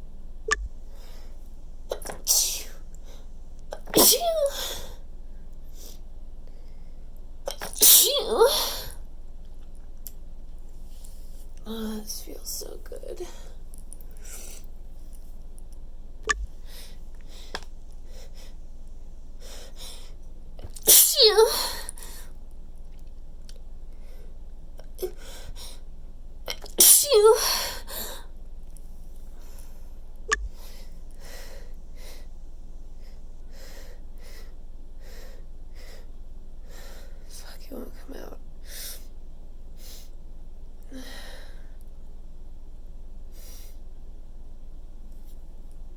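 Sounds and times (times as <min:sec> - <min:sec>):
person sniffling and breathing: 0:13.3 - 0:14.8, 0:16.5 - 0:18.7, 0:19.4 - 0:22.3, 0:29.4 - 0:32.3, 0:43.3 - 0:43.9
catching breaths before sneeze: 0:13.4 - 0:14.8, 0:16.6 - 0:18.7.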